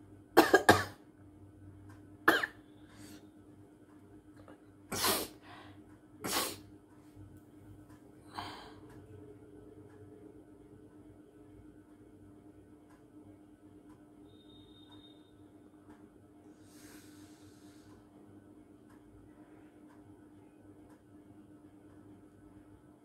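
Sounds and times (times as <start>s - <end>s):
woman sneezing and coughing: 4.9s - 5.4s, 6.3s - 6.6s.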